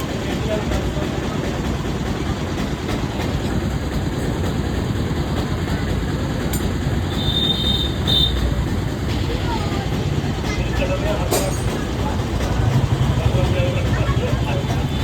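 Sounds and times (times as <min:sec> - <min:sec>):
vehicle road rumble: 0:05.2 - 0:15.0.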